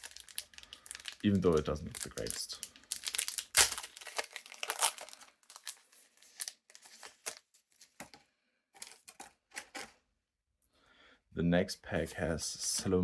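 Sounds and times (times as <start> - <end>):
foil wrapper crinkling and tearing: 0.0 - 8.0.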